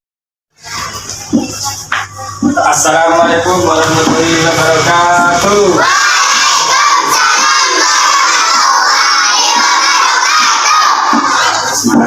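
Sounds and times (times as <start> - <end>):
children answering in chorus: 5.8 - 11.9.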